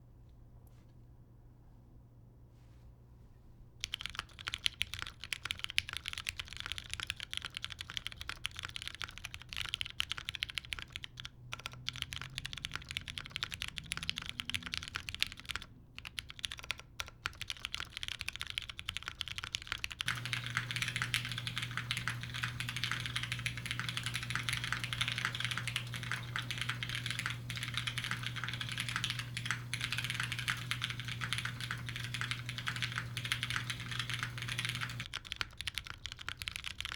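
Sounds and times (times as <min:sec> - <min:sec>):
mechanical keyboard typing: 0:03.8 - 0:36.9
steady low hum: 0:20.0 - 0:35.1.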